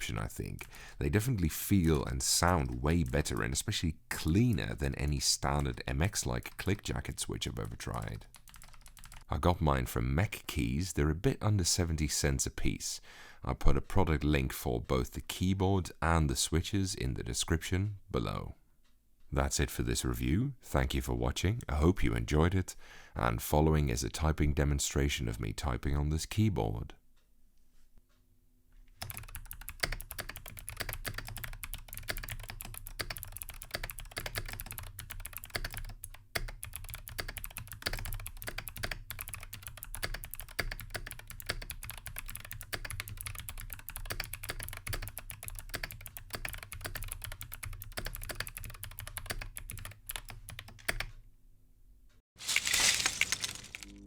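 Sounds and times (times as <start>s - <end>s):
fast typing on mechanical keyboard: 7.9s - 9.3s, 29.0s - 51.1s.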